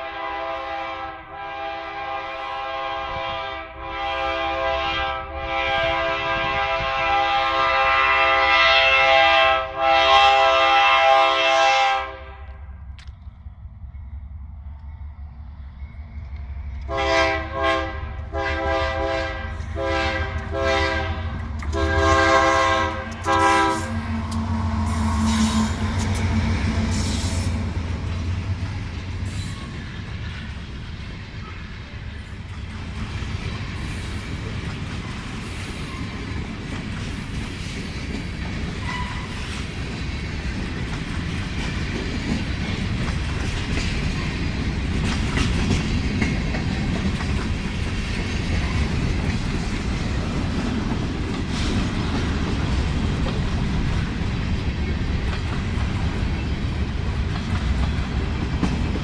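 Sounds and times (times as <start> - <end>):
freight train rumbling past: 0.0 - 59.0
wheels clacking over rail joints: 19.5 - 59.0.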